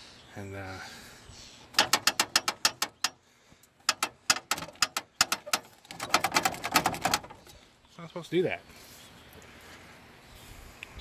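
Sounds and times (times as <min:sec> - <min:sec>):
truck hood rattling: 0:01.7 - 0:03.2, 0:03.8 - 0:07.6.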